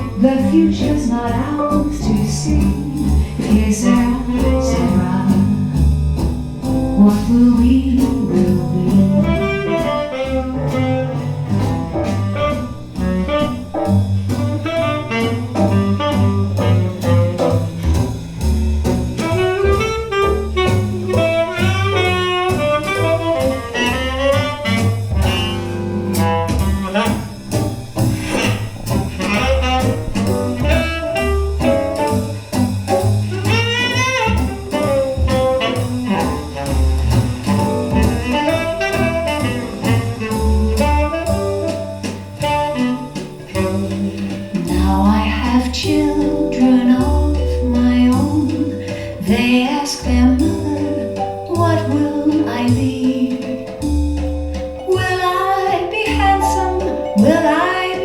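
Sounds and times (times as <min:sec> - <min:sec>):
low bass line: 0:00.0 - 0:58.0
saxophone melody: 0:08.3 - 0:18.1, 0:19.2 - 0:44.9, 0:54.1 - 0:58.0.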